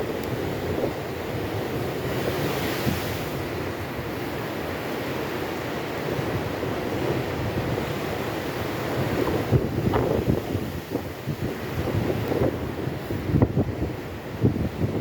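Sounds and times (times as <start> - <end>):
waves breaking against embankment: 0.0 - 15.0
wind rumbling on microphone: 0.0 - 15.0.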